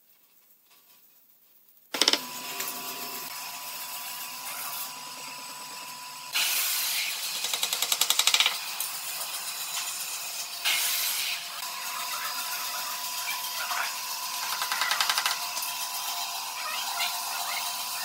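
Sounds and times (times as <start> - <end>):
power tool whining: 2.0 - 10.0.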